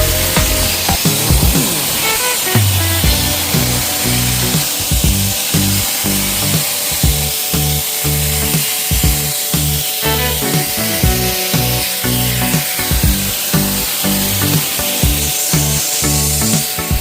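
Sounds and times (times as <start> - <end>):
music with repeating bass line: 0.0 - 17.0
steady high hiss: 0.0 - 17.0.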